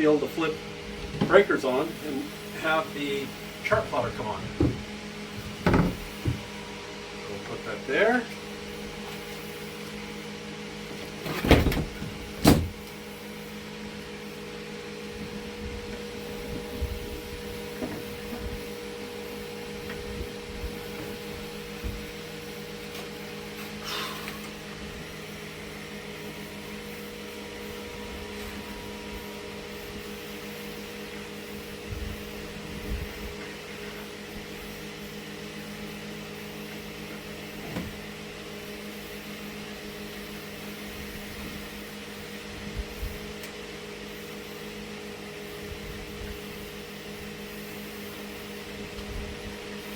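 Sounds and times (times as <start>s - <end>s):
low electrical hum: 0.0s - 49.9s
loud knocks: 4.4s - 4.9s.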